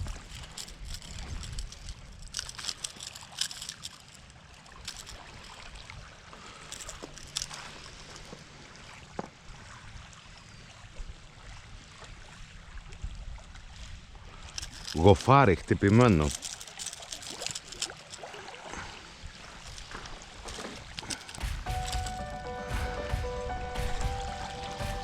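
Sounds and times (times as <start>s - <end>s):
shallow water splashing: 14.2s - 22.2s.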